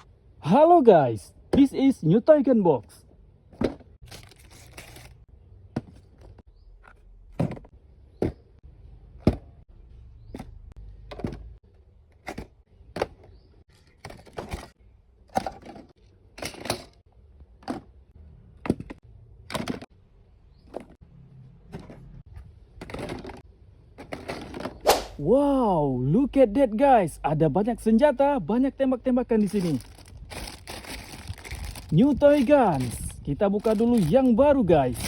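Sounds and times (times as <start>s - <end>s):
packaging rustling: 4.0s - 5.2s, 29.4s - 35.0s
plastic toys knocking: 11.1s - 11.6s, 18.6s - 19.9s.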